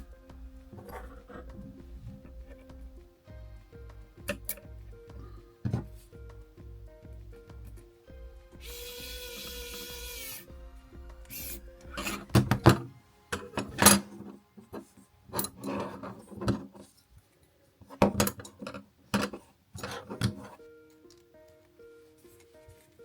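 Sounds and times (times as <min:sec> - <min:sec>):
soft background music: 0:00.0 - 0:23.0
high grinding hiss: 0:08.6 - 0:10.5.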